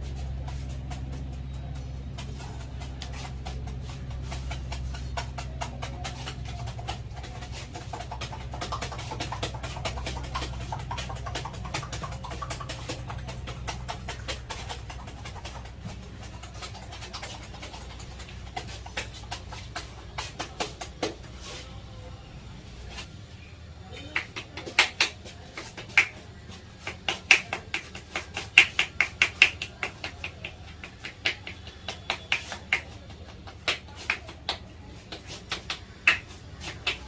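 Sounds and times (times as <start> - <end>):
steady low hum: 0.0 - 37.0
hand taps and slaps on head: 26.8 - 37.0.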